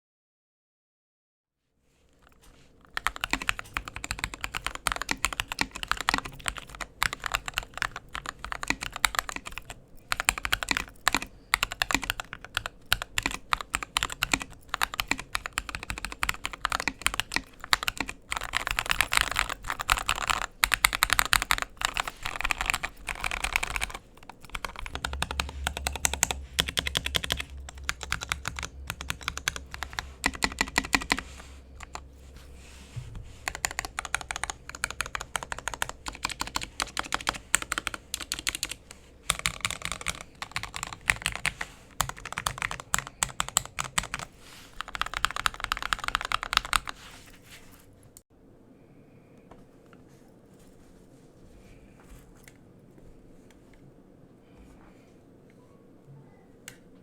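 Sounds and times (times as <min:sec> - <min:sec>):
steady low hum: 0:01.9 - 0:57.0
fast typing on mechanical keyboard: 0:02.2 - 0:32.1, 0:33.4 - 0:47.0.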